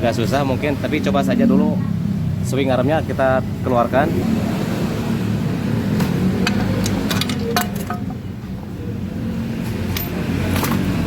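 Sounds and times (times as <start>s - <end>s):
metal clinks and knocks: 6.4s - 8.2s, 9.9s - 10.9s.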